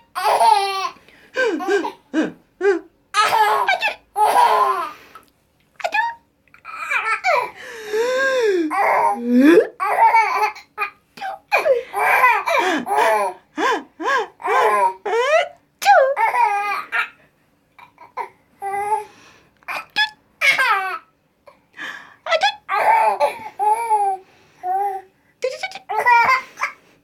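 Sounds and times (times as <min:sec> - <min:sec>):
baby laughing: 0:00.2 - 0:04.9, 0:06.6 - 0:07.6, 0:08.4 - 0:13.4, 0:14.4 - 0:17.2, 0:19.7 - 0:21.1, 0:25.7 - 0:26.8.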